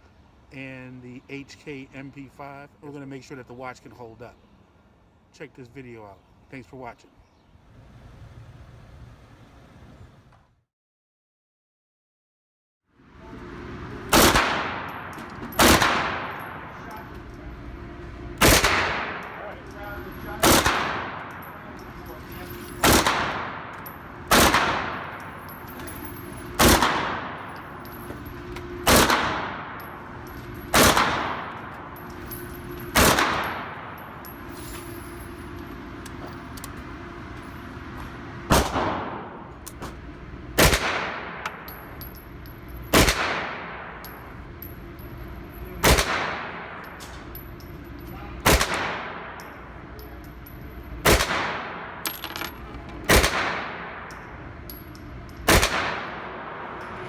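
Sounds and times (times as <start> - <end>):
gunshots with echo: 14.1 - 16.9, 18.4 - 21.8, 22.5 - 25.4, 26.5 - 27.7, 28.8 - 32.0, 32.9 - 34.2, 38.5 - 39.5, 40.6 - 41.7, 42.9 - 44.0, 45.8 - 46.9, 48.4 - 49.4, 51.0 - 52.0, 53.0 - 54.1, 55.5 - 56.8.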